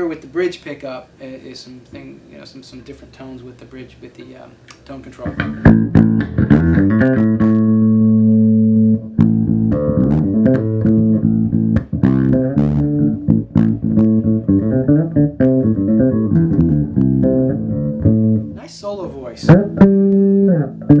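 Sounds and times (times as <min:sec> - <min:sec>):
electric bass notes: 0:05.2 - 0:21.0.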